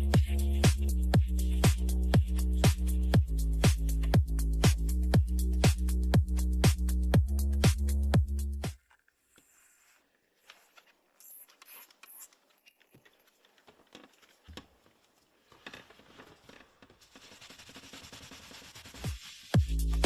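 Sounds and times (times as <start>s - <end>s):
faint scratching and rubbing: 8.8s - 20.0s.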